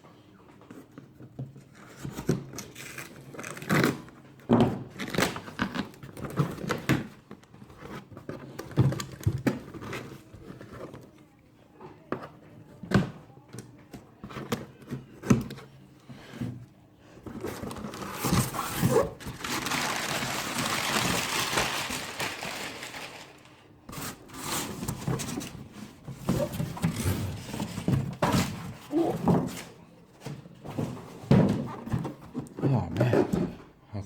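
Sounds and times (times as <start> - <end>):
cardboard rasping and scraping: 17.3 - 21.1, 23.9 - 29.8.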